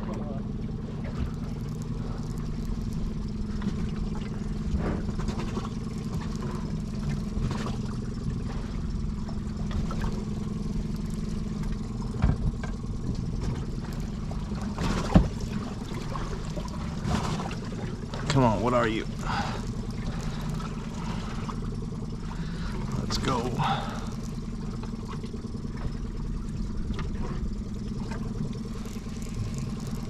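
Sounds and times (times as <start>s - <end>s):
boat engine running: 0.0s - 30.0s.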